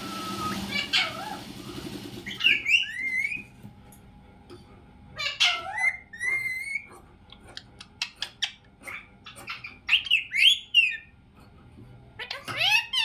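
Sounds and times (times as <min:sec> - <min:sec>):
parrot squawking loudly: 0:00.0 - 0:01.5
parrot chirping: 0:00.0 - 0:01.6, 0:05.2 - 0:11.2.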